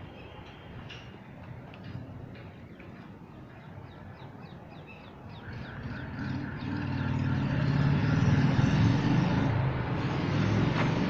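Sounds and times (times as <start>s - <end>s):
vehicle engine approaching: 5.4s - 11.0s.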